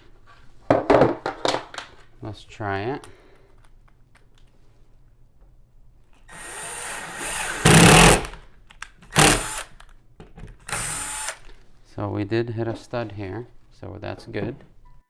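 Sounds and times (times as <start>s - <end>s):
power drill drilling into wall: 6.3s - 8.4s, 9.1s - 9.7s, 10.7s - 11.5s.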